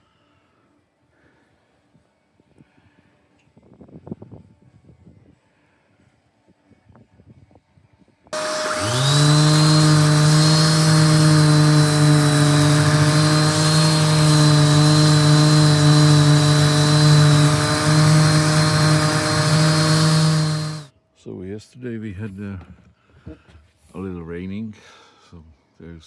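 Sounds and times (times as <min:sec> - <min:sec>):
electric power tool whining: 0:08.4 - 0:20.9.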